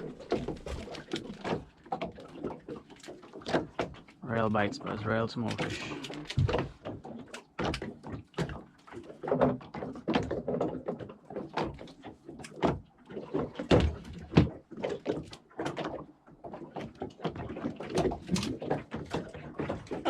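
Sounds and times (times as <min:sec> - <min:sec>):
rapid knocks and thumps: 0:03.3 - 0:11.9.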